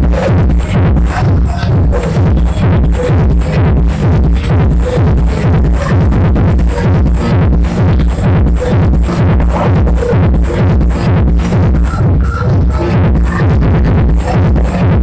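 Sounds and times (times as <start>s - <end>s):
electronic dance music: 0.0s - 15.0s.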